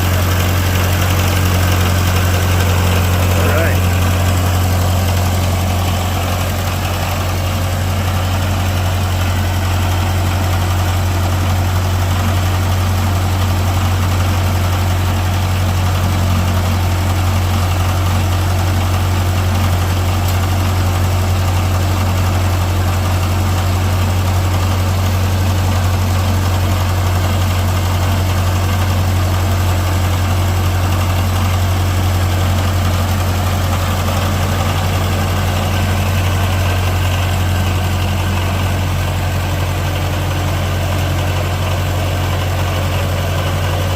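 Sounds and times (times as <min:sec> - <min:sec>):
tractor engine idling: 0:00.0 - 0:43.9.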